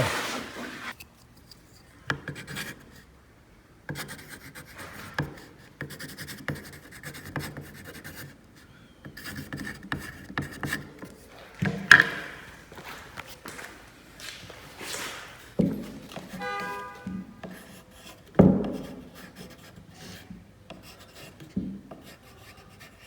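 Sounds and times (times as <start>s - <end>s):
writing scratches on wood: 2.3s - 3.0s, 3.9s - 8.4s, 9.1s - 11.3s, 15.1s - 23.0s.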